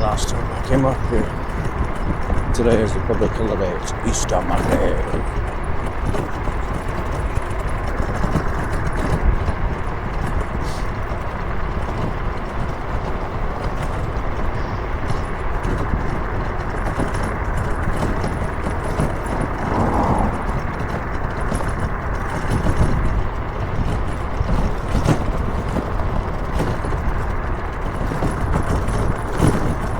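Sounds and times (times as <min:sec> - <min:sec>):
vehicle road and engine noise: 0:00.0 - 0:29.9.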